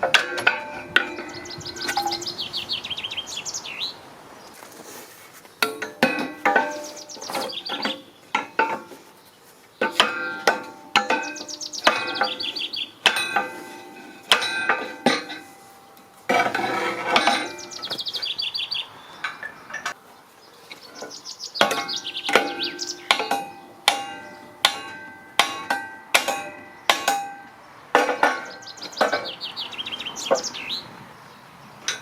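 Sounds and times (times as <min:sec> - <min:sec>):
metal strikes on steel: 0:00.0 - 0:02.4, 0:09.8 - 0:17.9, 0:21.6 - 0:29.4
birds trilling: 0:00.4 - 0:04.7, 0:06.4 - 0:32.0.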